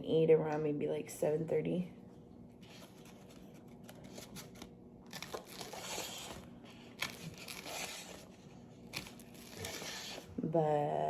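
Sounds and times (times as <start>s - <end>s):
food being cut and handled: 2.6s - 10.4s.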